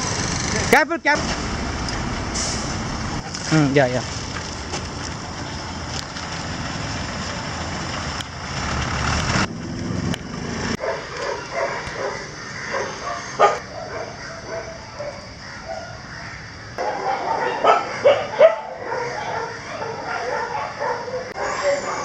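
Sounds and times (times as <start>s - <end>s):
vehicle engine running: 0.0s - 3.3s, 4.2s - 10.9s
dog whimpering yelps: 17.0s - 22.0s.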